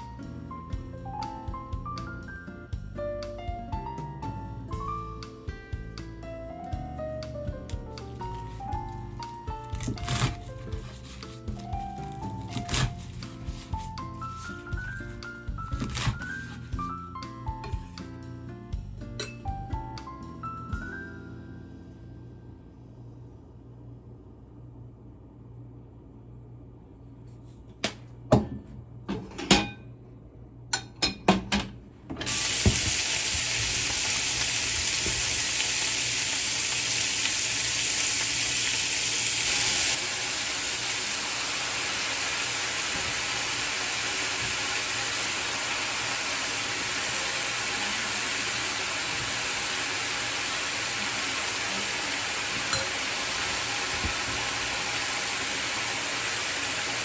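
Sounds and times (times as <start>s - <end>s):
kitchen knocks and clicks: 30.7s - 32.8s
food sizzling in a hot pan: 32.3s - 57.0s.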